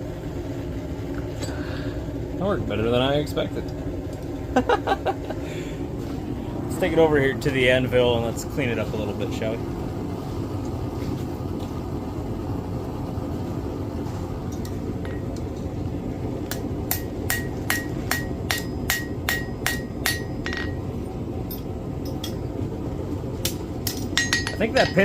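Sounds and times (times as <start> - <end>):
steady low hum: 0.0 - 25.0
hammer striking iron on anvil: 16.5 - 20.9, 23.4 - 25.0.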